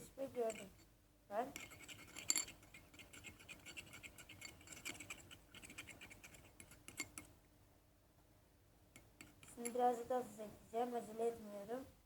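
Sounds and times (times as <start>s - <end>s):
spoon scraping a dish: 1.5s - 7.3s, 9.2s - 9.8s.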